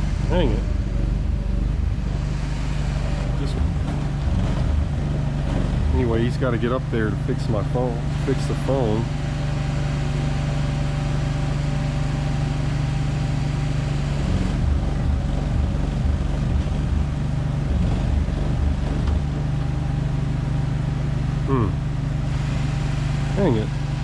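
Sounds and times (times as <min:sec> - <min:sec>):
uneven low rumble: 0:00.0 - 0:12.2
low engine hum: 0:00.0 - 0:24.0.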